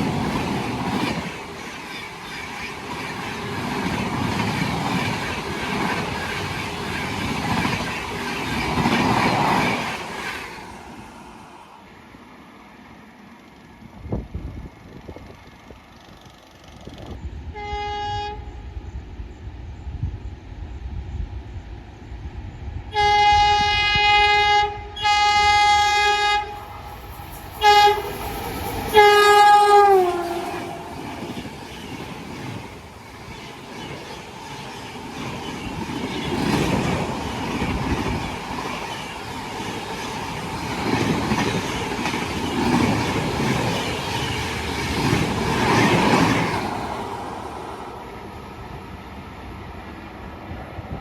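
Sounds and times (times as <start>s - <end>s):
train wheels clattering on rails: 0.0s - 10.9s, 26.6s - 47.7s
train horn blasts: 17.5s - 18.7s, 22.9s - 26.9s, 27.6s - 28.2s, 28.9s - 31.1s.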